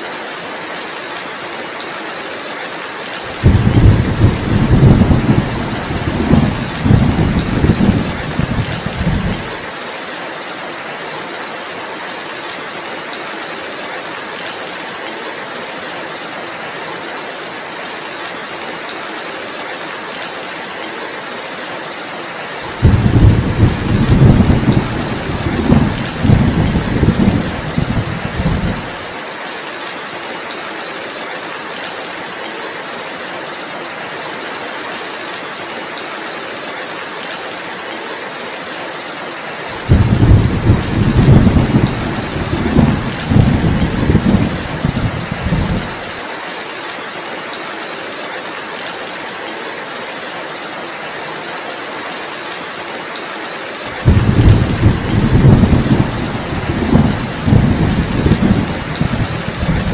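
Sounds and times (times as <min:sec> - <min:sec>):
heavy rainfall: 0:00.0 - 0:59.9
deep rolling thunder: 0:03.4 - 0:09.5, 0:22.8 - 0:29.0, 0:39.9 - 0:46.1, 0:54.0 - 0:59.9.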